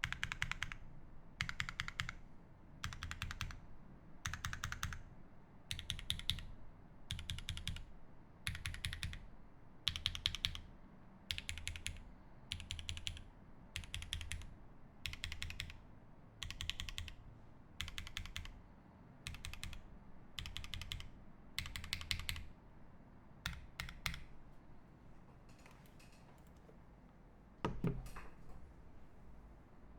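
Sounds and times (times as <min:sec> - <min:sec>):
typing on mechanical keyboard: 0:00.0 - 0:00.8, 0:01.4 - 0:02.2, 0:02.8 - 0:03.6, 0:04.2 - 0:05.0, 0:05.7 - 0:06.5, 0:07.1 - 0:07.9, 0:08.5 - 0:09.3, 0:09.9 - 0:10.6, 0:11.3 - 0:15.8, 0:16.4 - 0:17.2, 0:17.8 - 0:18.6, 0:19.3 - 0:19.8, 0:20.4 - 0:22.5, 0:23.4 - 0:24.3.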